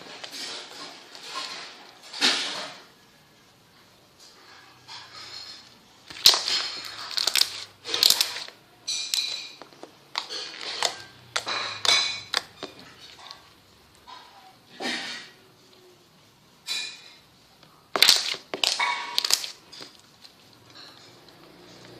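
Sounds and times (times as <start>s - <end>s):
slime squelching by hand: 6.0s - 8.6s, 9.2s - 13.5s, 17.9s - 21.9s.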